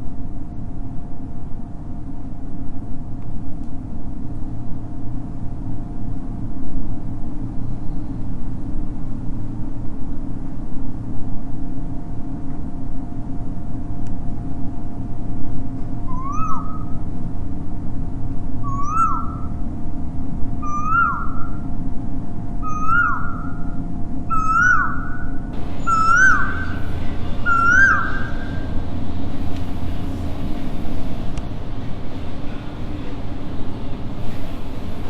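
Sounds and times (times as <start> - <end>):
steady low hum: 25.4 - 35.0
squeaky rising and falling call: 25.6 - 33.2.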